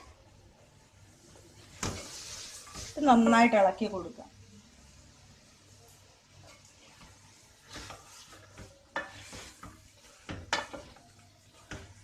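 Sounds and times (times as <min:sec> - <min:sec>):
onions sizzling in hot oil: 0:00.0 - 0:12.0
spoon scraping pan: 0:01.6 - 0:03.5, 0:06.3 - 0:12.0.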